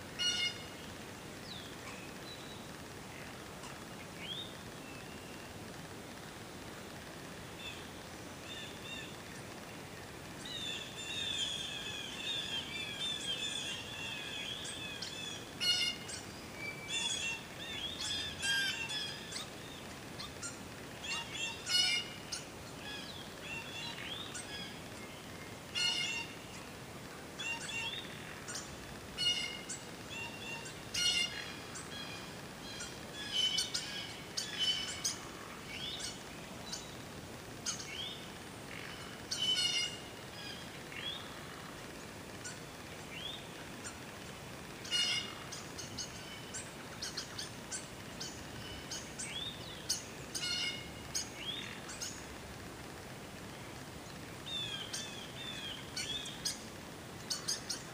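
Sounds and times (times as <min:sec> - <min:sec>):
faint steady hiss: 0:00.0 - 0:57.9
songbirds singing: 0:00.0 - 0:57.9.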